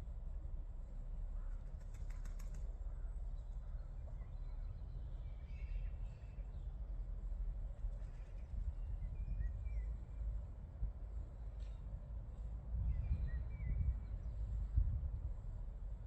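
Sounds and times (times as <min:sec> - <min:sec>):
bird wings flapping: 0:01.8 - 0:02.7.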